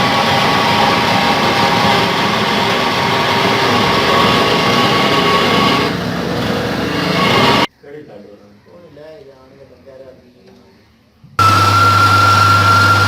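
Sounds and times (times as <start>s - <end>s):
lathe running: 0.0s - 7.7s, 11.4s - 13.0s.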